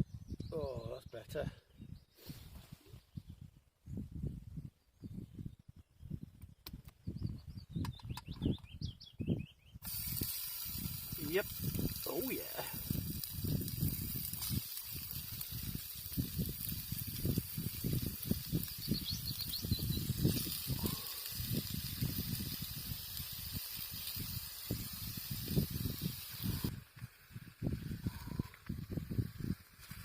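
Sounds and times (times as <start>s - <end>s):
bacon sizzling in a frying pan: 9.8s - 30.0s.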